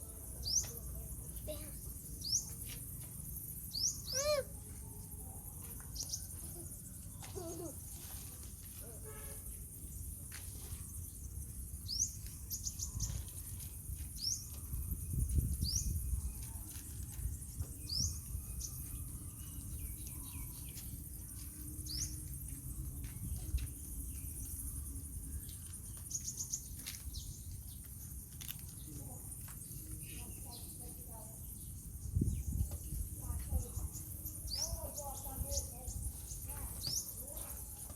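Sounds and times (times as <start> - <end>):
bird chirps: 3.7 - 7.7.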